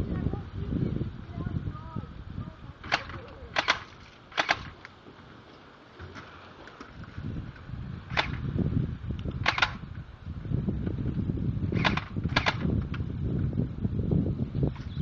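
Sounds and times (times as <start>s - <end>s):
low rumbling noise: 0.0s - 15.0s
airsoft guns firing sharp pops: 2.8s - 5.0s, 8.1s - 8.4s, 9.4s - 9.8s, 11.8s - 12.7s.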